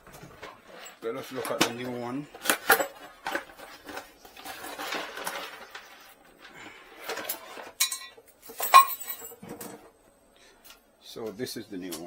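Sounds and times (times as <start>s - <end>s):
plastic rustling: 0.3s - 7.8s.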